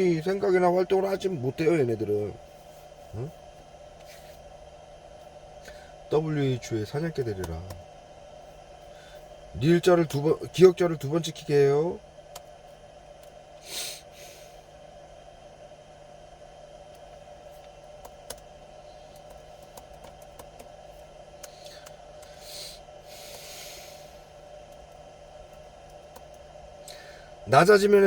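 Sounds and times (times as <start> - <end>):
electrical hum: 0.0 - 28.0
keyboard typing clicks: 18.0 - 18.5, 19.1 - 20.7.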